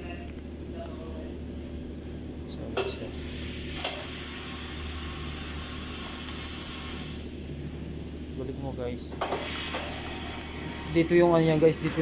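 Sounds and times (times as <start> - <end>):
compressed air hissing: 3.1 - 7.4, 9.2 - 10.7.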